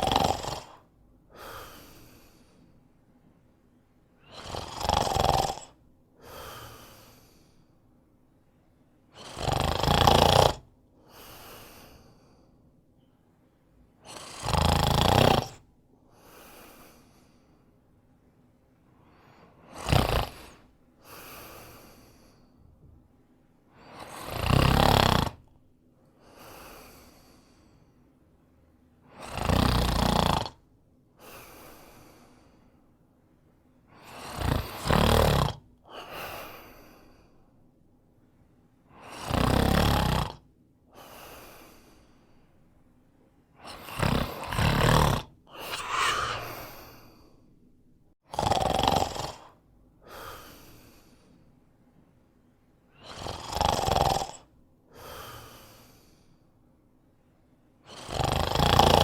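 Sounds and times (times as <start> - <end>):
man snoring: 0.0 - 2.5, 4.2 - 7.5, 9.2 - 12.1, 14.1 - 15.6, 19.6 - 22.3, 23.8 - 25.5, 29.1 - 30.6, 34.0 - 35.7, 39.0 - 40.4, 43.6 - 47.3, 48.3 - 50.9, 53.0 - 56.1, 57.9 - 59.0
soft short breath: 45.6 - 47.6.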